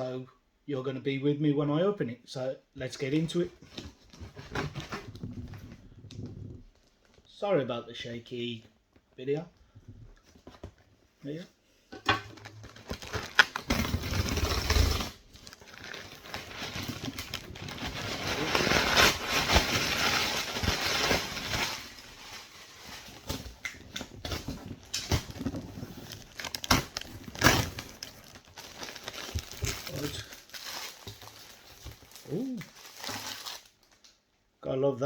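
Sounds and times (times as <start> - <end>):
packaging rustling and crinkling: 3.0 - 7.3, 12.0 - 34.1.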